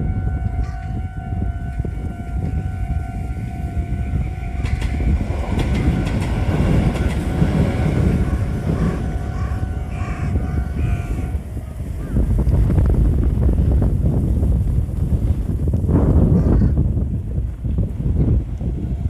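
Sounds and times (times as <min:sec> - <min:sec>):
crossing warning bell: 0:00.0 - 0:12.0
train wheels rumbling and clattering: 0:00.0 - 0:19.0.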